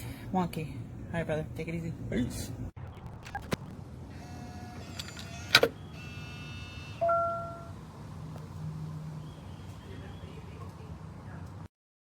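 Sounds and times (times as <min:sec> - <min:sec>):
faint low motor whir: 0:04.0 - 0:08.9
high electronic tones: 0:06.6 - 0:07.8
two-note chime: 0:07.0 - 0:07.8.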